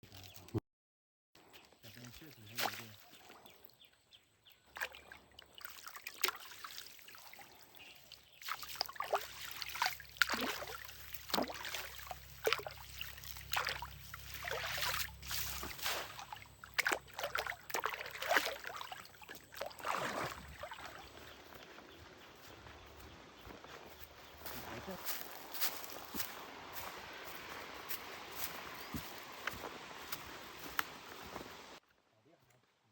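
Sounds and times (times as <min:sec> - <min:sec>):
water splashing and sloshing: 0:01.9 - 0:03.8, 0:04.6 - 0:21.9, 0:25.1 - 0:31.8
water trickling and dripping: 0:04.8 - 0:21.0.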